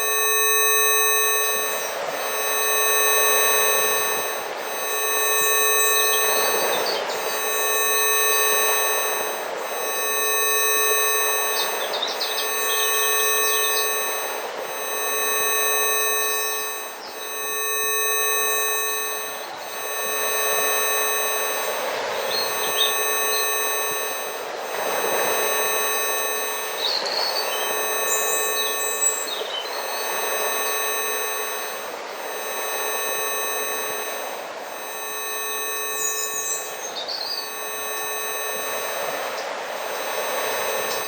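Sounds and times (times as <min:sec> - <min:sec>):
steady electronic tone: 0:00.0 - 0:41.0
birds chirping: 0:06.0 - 0:07.4, 0:11.2 - 0:14.1, 0:22.2 - 0:24.0, 0:26.6 - 0:30.4, 0:36.0 - 0:37.5.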